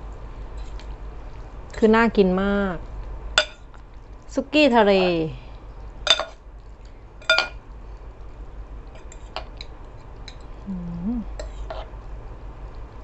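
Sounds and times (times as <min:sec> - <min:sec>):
utensils clinking against dishes: 0:06.1 - 0:06.4, 0:07.2 - 0:07.6.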